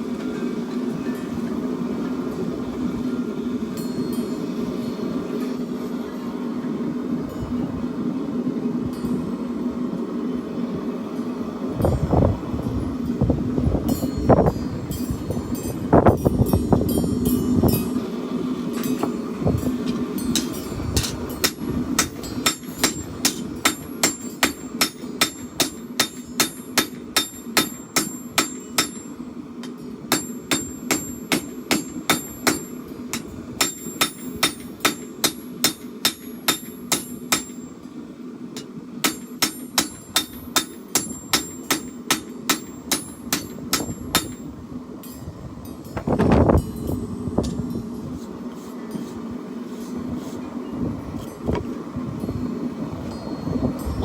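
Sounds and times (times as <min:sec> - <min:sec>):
steady low rumble: 0:06.3 - 0:48.5
hammer striking steel on anvil: 0:19.8 - 0:37.8, 0:38.6 - 0:48.0.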